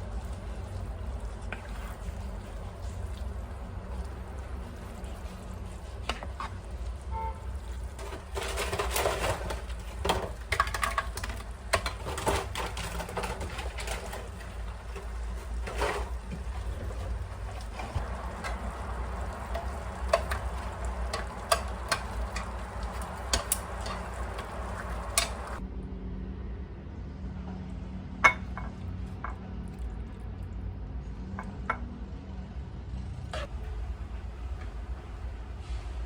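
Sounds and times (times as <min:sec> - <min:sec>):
utensils clinking and scraping: 0:07.8 - 0:25.6
kitchenware clatter: 0:07.9 - 0:25.6, 0:28.2 - 0:29.4.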